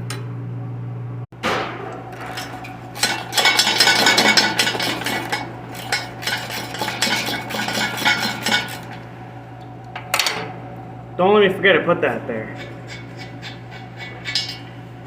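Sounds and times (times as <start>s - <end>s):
steady low hum: 0.0s - 15.0s
metal tools clinking and rattling: 2.1s - 9.0s, 12.6s - 14.7s.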